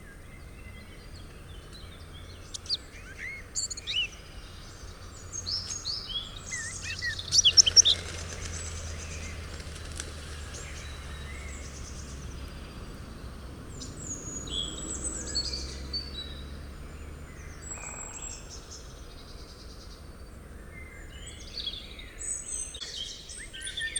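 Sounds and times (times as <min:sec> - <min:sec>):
small birds chirping: 0:00.0 - 0:23.9.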